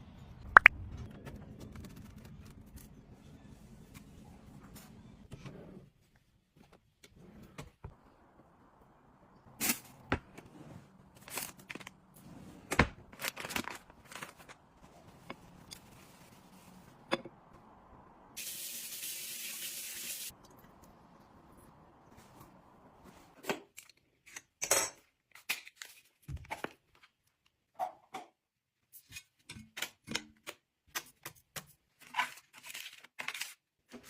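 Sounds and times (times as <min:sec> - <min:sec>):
items being handled: 0:09.6 - 0:17.5, 0:29.0 - 0:34.0.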